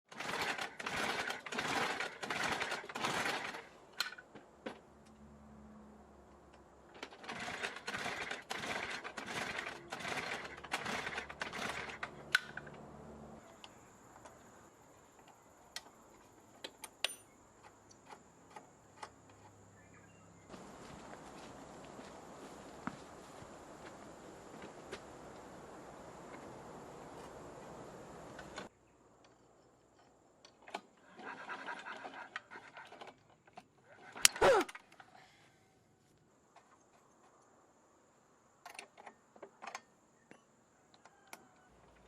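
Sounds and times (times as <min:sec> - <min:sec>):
lawnmower starter cord rasping: 0:00.1 - 0:04.3, 0:06.9 - 0:14.4, 0:30.5 - 0:35.1.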